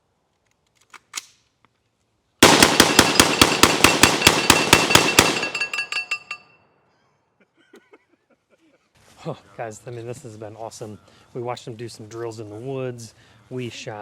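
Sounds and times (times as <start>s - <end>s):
rapid gunshots: 2.4s - 5.9s
steel targets ringing: 2.4s - 6.5s.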